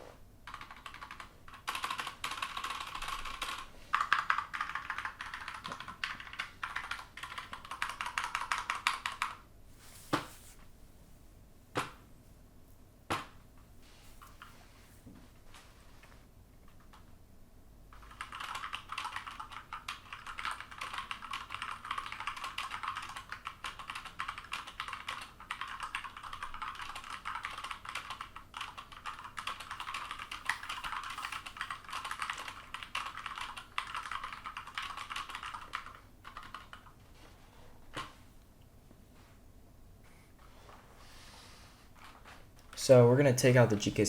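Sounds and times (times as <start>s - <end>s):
fast typing on mechanical keyboard: 0.4s - 9.4s, 17.9s - 37.3s.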